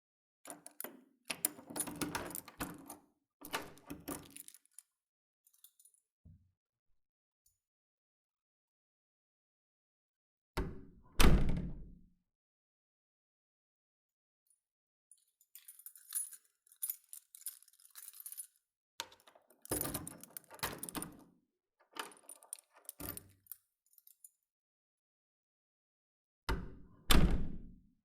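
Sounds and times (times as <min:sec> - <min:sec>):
door lock and handle rattling: 0:00.5 - 0:04.8, 0:15.6 - 0:21.3, 0:21.9 - 0:23.6
keys jangling: 0:00.5 - 0:04.9, 0:15.2 - 0:21.2, 0:22.0 - 0:24.3.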